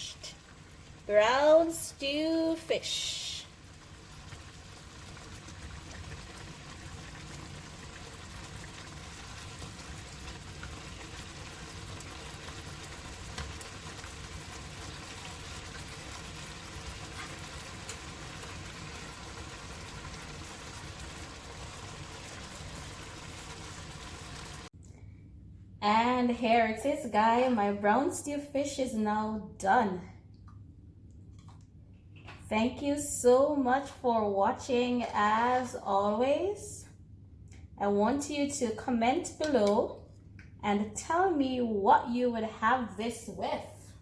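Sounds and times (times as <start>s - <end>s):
gravy simmering and bubbling: 0.0s - 24.7s.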